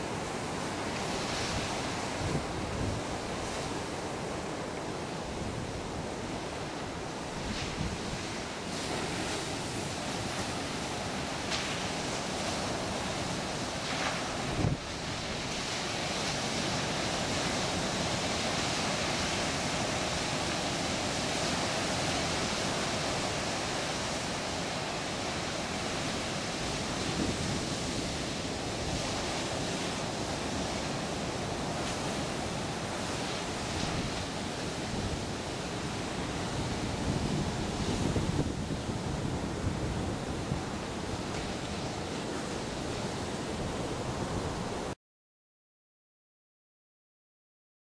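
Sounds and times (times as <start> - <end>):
ocean surf breaking: 0.0 - 45.0
wind buffeting microphone: 0.1 - 23.6, 24.2 - 44.9.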